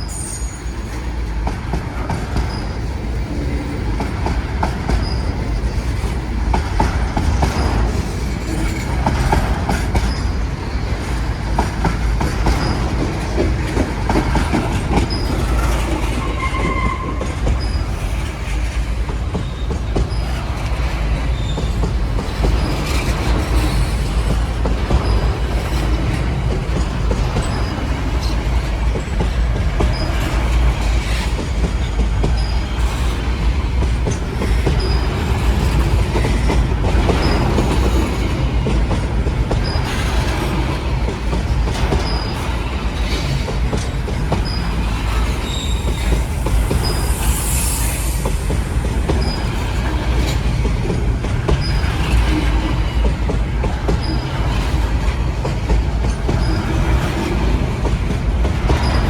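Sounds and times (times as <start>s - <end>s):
train rumbling past: 0.0s - 59.0s
high wheel squeaks: 15.1s - 18.2s, 41.9s - 50.1s
high hiss: 45.8s - 49.5s.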